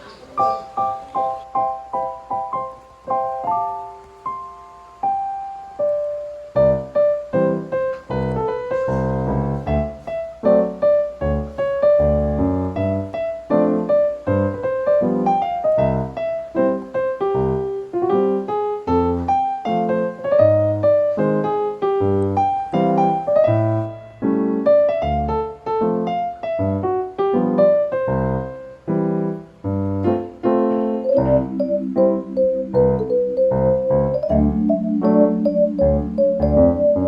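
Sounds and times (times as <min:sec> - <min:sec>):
gentle piano music: 0:00.0 - 0:37.0.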